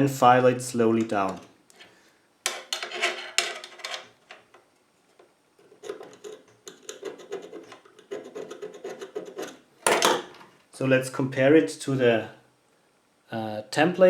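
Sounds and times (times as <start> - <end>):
file rasping metal key blank: 5.8 - 9.6.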